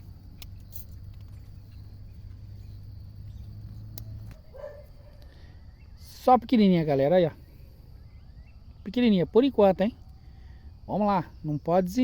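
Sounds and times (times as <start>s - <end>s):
faint insect drone: 0.0s - 12.0s
light clicks: 3.6s - 4.5s.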